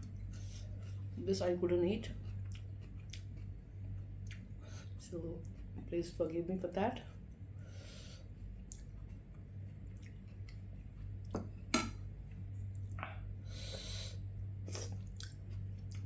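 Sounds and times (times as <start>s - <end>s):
chewing: 2.0s - 5.9s, 8.2s - 11.4s, 14.6s - 16.0s.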